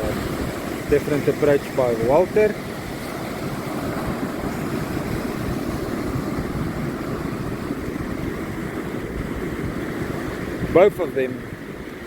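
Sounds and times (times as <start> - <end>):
ocean surf breaking: 0.0 - 12.0
wind buffeting microphone: 0.0 - 12.0.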